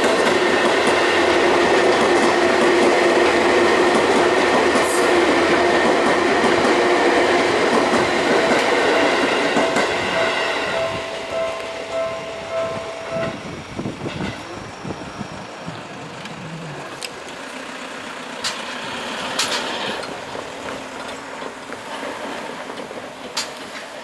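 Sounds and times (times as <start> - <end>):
level crossing warning bell: 7.8 - 13.8.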